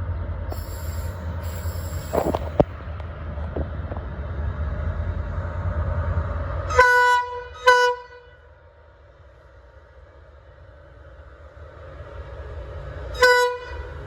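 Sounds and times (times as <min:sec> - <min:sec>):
train rumbling: 0:00.0 - 0:14.0
train horn toots: 0:06.7 - 0:08.5, 0:13.2 - 0:14.0.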